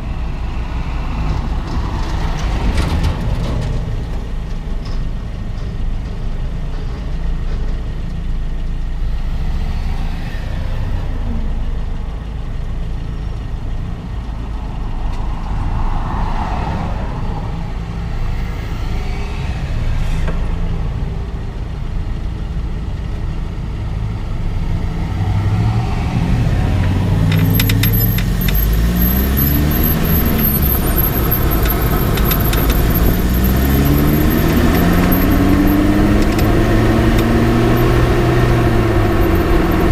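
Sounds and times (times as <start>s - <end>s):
road and tyre rumble: 0.0s - 39.9s
car engine accelerating: 22.9s - 39.9s
sharp ticks: 27.3s - 38.0s.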